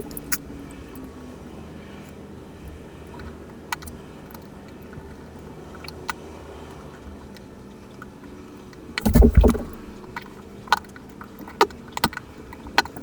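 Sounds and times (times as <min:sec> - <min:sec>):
steady low hum: 0:09.0 - 0:10.2.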